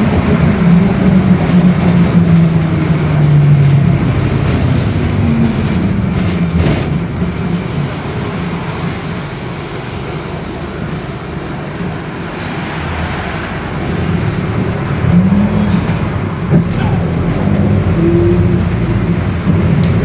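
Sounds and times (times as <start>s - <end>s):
low wavering differential growl: 0.0s - 9.2s, 11.8s - 20.0s
bus diesel drivetrain noise: 0.0s - 20.0s.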